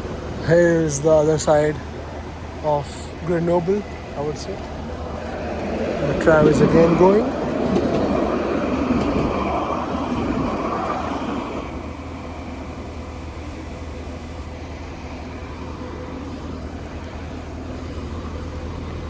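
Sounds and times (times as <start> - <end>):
low street hum: 0.0 - 19.0
tram rumbling past: 0.0 - 19.0.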